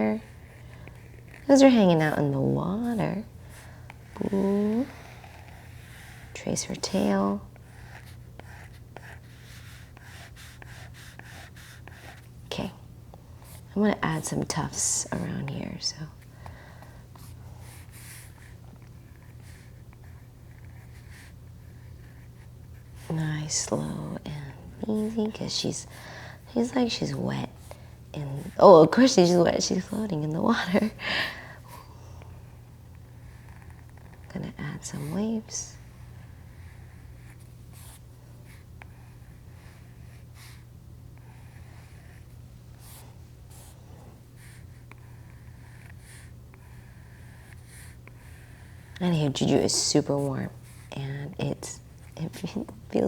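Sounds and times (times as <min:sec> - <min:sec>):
low steady hum: 0:00.0 - 0:53.0
stylus scratching on tablet screen: 0:04.0 - 0:12.3, 0:44.4 - 0:53.0.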